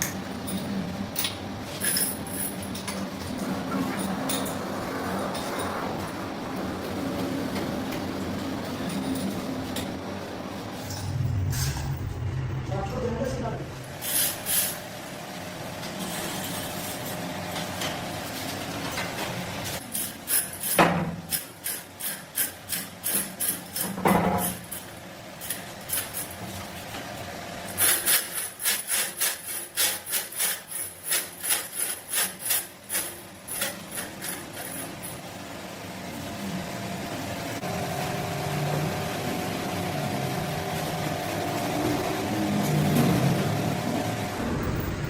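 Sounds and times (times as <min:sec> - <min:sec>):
steady machine hum: 0:00.0 - 0:20.3, 0:30.7 - 0:45.0
hand tool scraping strokes: 0:27.7 - 0:35.1.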